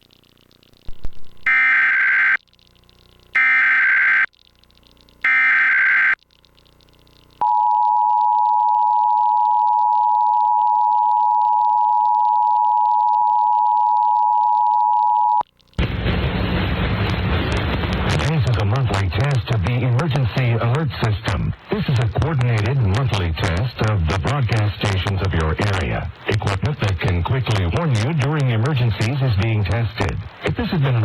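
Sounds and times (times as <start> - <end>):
digital data tone bursts: 0.9 - 2.4.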